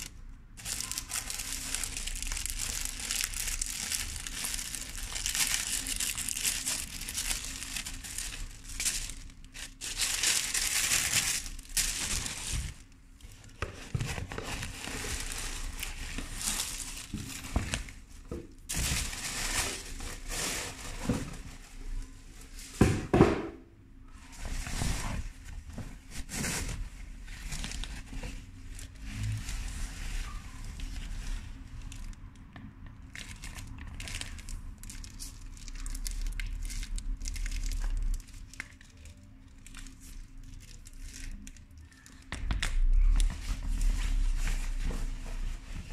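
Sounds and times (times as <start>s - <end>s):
paper packaging crumpling: 0.0s - 18.1s, 18.7s - 21.4s, 33.0s - 45.9s.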